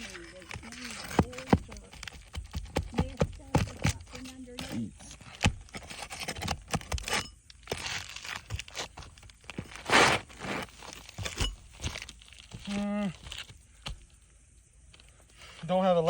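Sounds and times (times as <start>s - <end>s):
shingles being pried loose: 0.0s - 14.1s
person humming: 12.7s - 13.2s.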